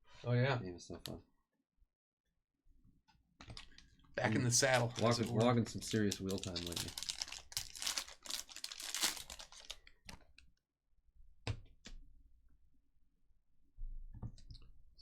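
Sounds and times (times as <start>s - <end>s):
foil wrapper crinkling and tearing: 4.5s - 9.9s.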